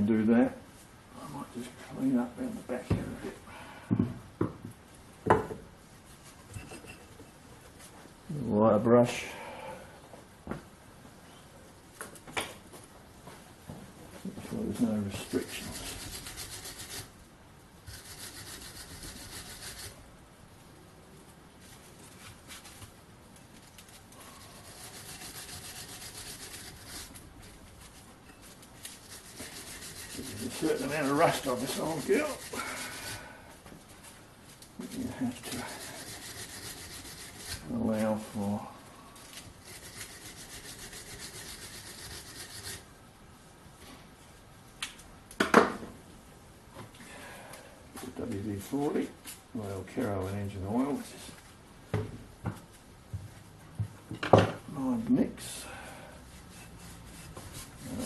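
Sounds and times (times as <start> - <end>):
wire brush scrubbing metal: 14.8 - 17.2, 17.9 - 20.0, 23.9 - 27.2, 28.8 - 33.3, 34.8 - 38.3, 39.5 - 42.9, 56.4 - 58.0.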